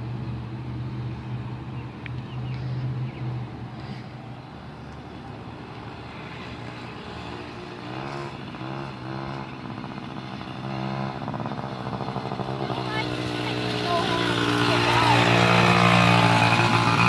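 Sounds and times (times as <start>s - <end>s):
small motorcycle engine revving: 5.4s - 17.0s.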